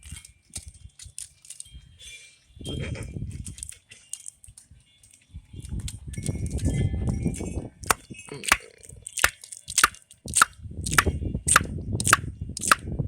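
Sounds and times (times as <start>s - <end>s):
sharp clicks: 7.9s - 12.8s.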